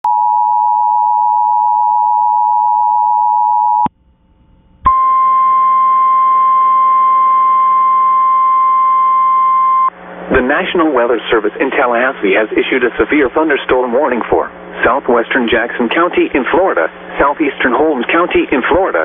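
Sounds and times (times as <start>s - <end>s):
two-tone attention signal: 4.9s - 9.9s.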